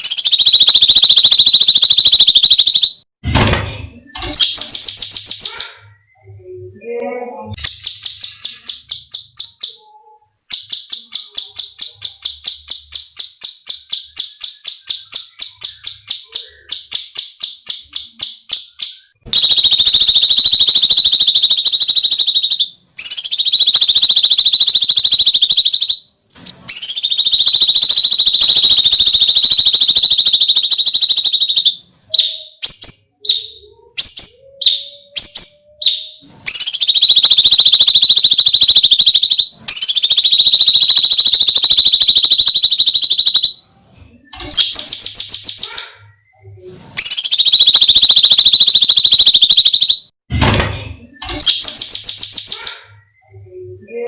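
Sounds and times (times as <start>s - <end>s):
bird calling: 0.0s - 3.0s, 35.8s - 43.6s, 47.0s - 50.1s.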